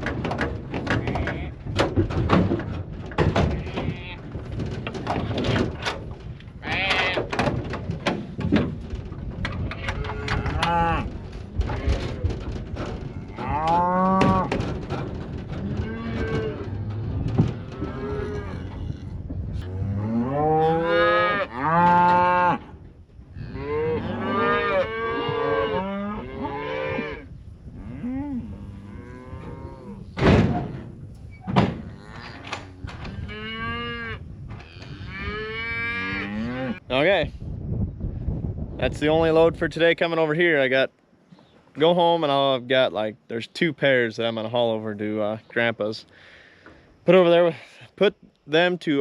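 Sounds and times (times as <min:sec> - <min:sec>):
loud knocks: 0:00.0 - 0:10.7, 0:11.4 - 0:18.0, 0:30.2 - 0:31.9
cows and calves mooing: 0:06.6 - 0:08.2, 0:09.4 - 0:30.5, 0:31.3 - 0:37.0.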